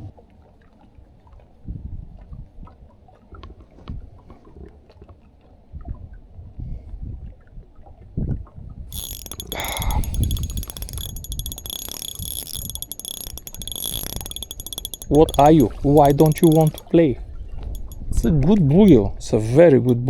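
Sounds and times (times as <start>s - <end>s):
spinning reel cranking clicks: 8.9s - 17.0s, 17.6s - 20.0s.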